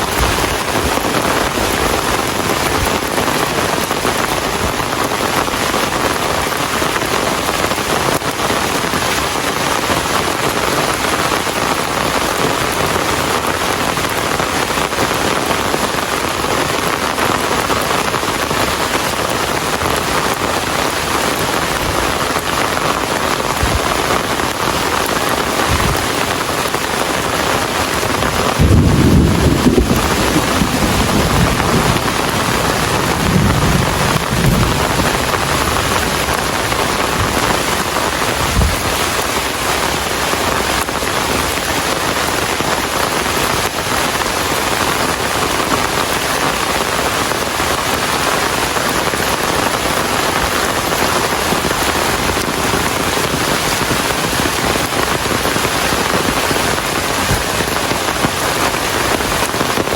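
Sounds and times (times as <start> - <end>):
thunder rumbling: 0.0 - 4.0, 21.2 - 41.7
heavy rain falling: 0.0 - 59.9.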